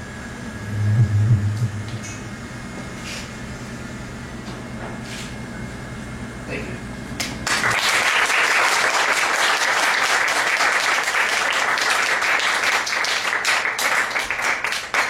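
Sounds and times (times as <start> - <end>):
audience applauding: 7.4 - 15.0.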